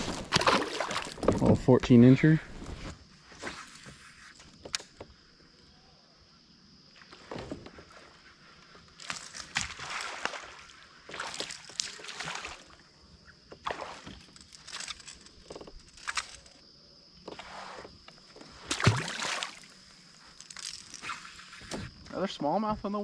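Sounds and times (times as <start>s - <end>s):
water splashing against kayak: 0.0s - 2.9s, 7.0s - 16.5s, 17.2s - 22.0s.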